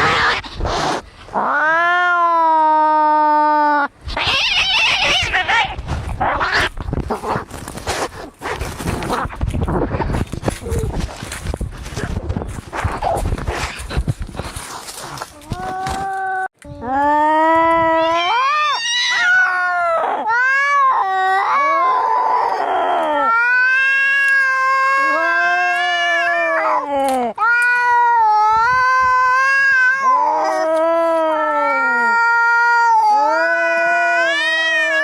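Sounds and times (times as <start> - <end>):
cats yowling in a fight: 1.4 - 6.8, 17.8 - 35.0.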